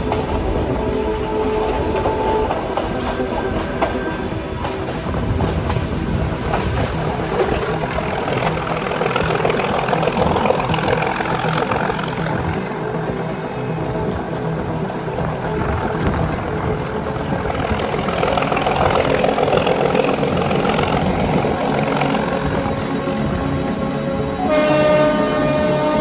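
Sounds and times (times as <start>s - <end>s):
train coaches rattling: 0.0s - 26.0s
wheels clicking over rail joints: 1.7s - 13.4s, 15.3s - 23.8s.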